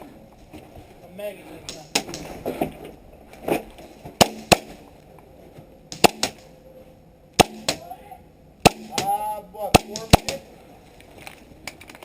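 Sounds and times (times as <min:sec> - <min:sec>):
airsoft pistol shots: 0:01.7 - 0:02.3, 0:04.2 - 0:04.8, 0:05.9 - 0:06.5, 0:07.4 - 0:07.9, 0:08.6 - 0:10.5.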